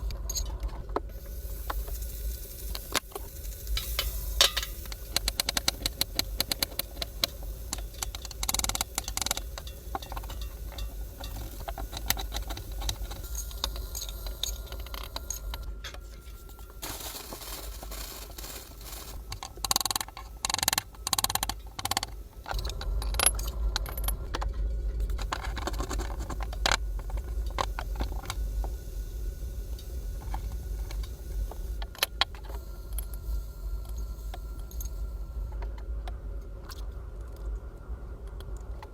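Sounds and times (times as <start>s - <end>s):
steady low hum: 0.0s - 38.9s
metal utensils clinking and scraping: 2.8s - 7.1s, 7.8s - 20.6s.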